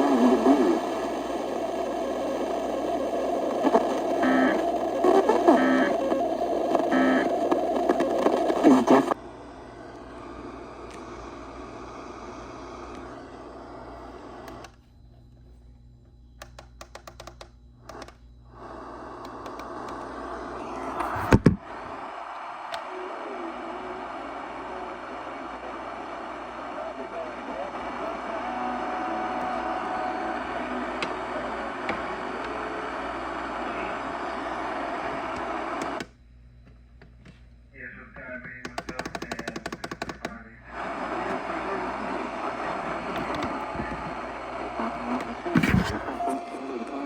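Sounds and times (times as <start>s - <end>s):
radio static hiss: 0.0s - 14.8s, 17.9s - 36.0s, 37.8s - 47.0s
sharp clicks: 16.4s - 18.2s, 19.2s - 20.1s.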